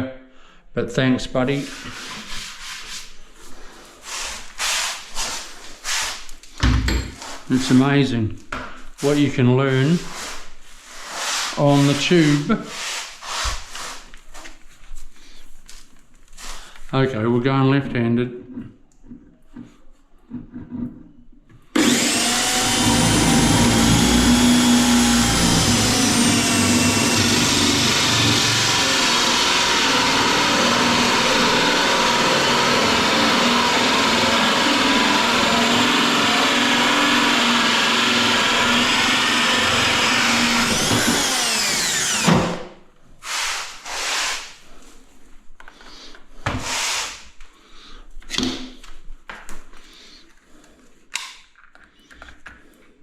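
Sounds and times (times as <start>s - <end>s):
knocks and scrapes: 9.0s - 14.6s, 18.4s - 21.3s
power drill whining: 21.7s - 42.6s.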